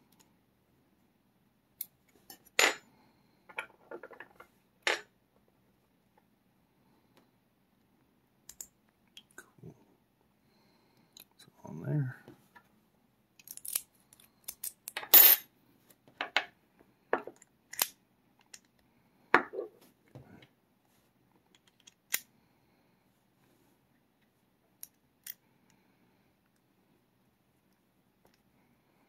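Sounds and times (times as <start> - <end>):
metallic clicks of padlock parts: 8.5 - 8.8, 13.4 - 15.0, 17.3 - 18.8, 21.5 - 22.3, 24.8 - 25.4.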